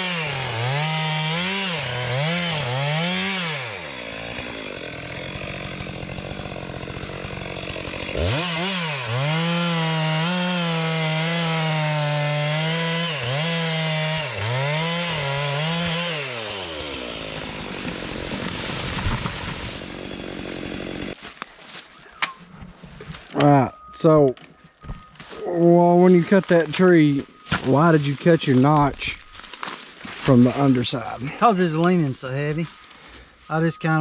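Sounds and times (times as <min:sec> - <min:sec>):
chainsaw cutting timber: 0:00.0 - 0:21.7, 0:25.2 - 0:34.0.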